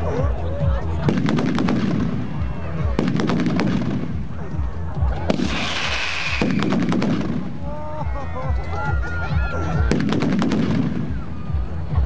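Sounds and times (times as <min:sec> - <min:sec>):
firecrackers banging: 0:00.9 - 0:07.8, 0:09.8 - 0:11.2
loud hissing burst: 0:05.4 - 0:06.6.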